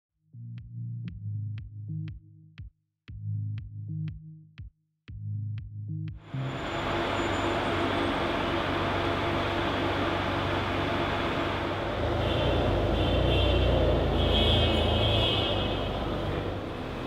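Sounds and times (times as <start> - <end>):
street noise: 6.2 - 17.0.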